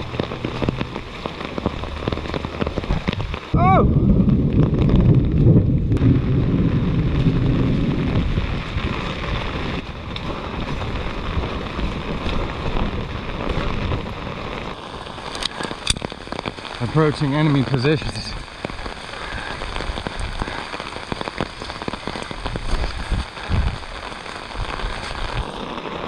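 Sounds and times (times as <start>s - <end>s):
steady rain: 0.0s - 26.0s
loud low thunder rumble: 2.8s - 14.3s.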